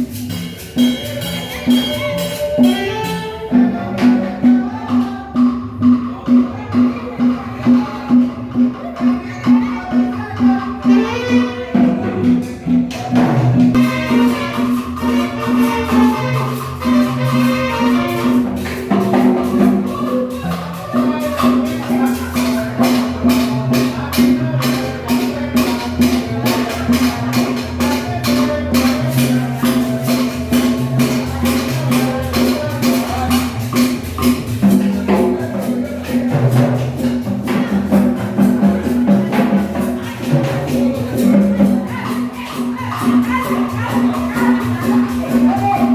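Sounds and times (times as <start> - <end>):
latin dance music: 0.0 - 45.9.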